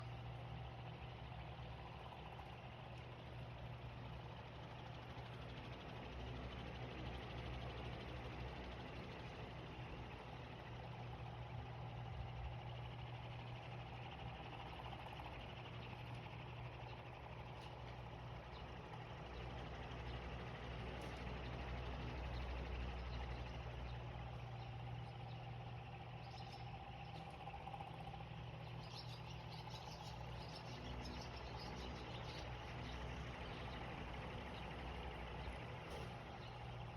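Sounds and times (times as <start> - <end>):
steady low hum: 0.0 - 36.9
faint bird chirps: 22.2 - 36.9.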